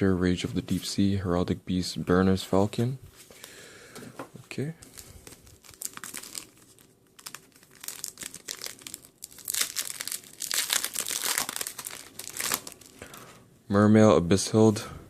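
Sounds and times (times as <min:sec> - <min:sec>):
foil wrapper crinkling and tearing: 0:04.8 - 0:13.2.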